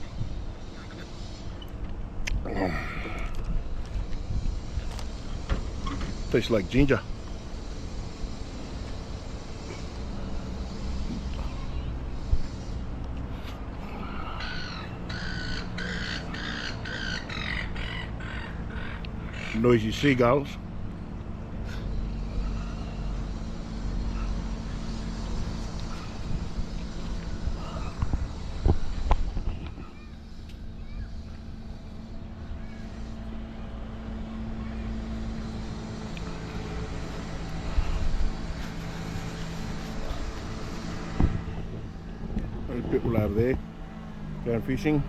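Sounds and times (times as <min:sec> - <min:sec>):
motor droning: 0:00.0 - 0:45.0
seagulls squawking: 0:14.0 - 0:19.6.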